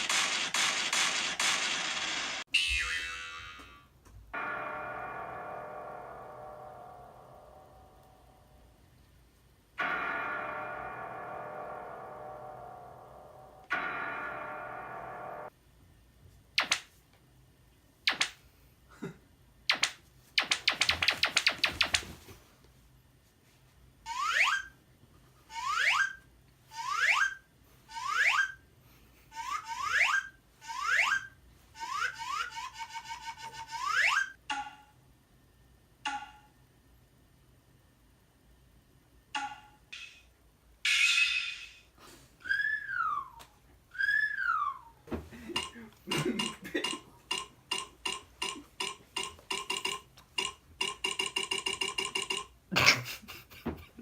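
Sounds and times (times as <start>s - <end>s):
upward whistle glides: 42.4s - 43.4s, 44.0s - 45.0s
clock ticking: 45.5s - 53.0s.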